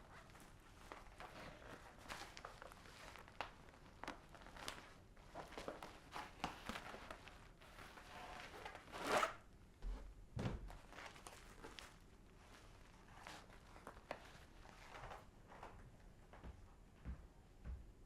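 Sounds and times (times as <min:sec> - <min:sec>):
small clicks taps and rustles: 0:00.3 - 0:07.4
dull thump: 0:10.3 - 0:10.8.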